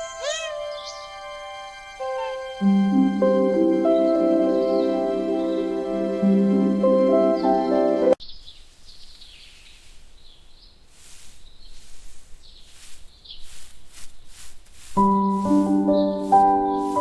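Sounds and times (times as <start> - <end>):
soft piano music: 0.0 - 8.2, 15.0 - 17.0
birds chirping: 0.0 - 17.0
faint outdoor ambience: 0.0 - 17.0.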